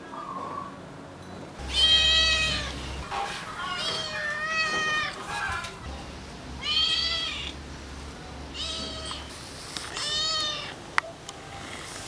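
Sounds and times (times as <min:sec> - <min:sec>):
cat meowing: 0:01.6 - 0:02.8, 0:06.6 - 0:07.6, 0:08.5 - 0:09.3, 0:09.9 - 0:10.8.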